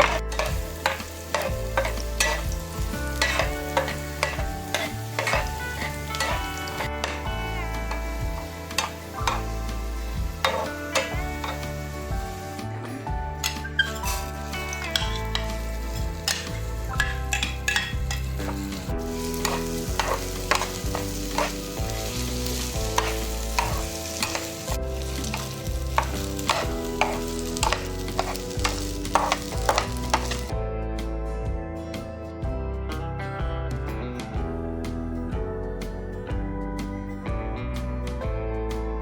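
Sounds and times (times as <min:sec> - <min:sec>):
utensil clicking against pan: 0:00.0 - 0:02.5, 0:03.2 - 0:07.2, 0:10.4 - 0:11.7, 0:23.0 - 0:24.7, 0:25.3 - 0:30.5
food sizzling in a pan: 0:00.0 - 0:12.7, 0:13.3 - 0:30.5
background music: 0:00.0 - 0:39.0.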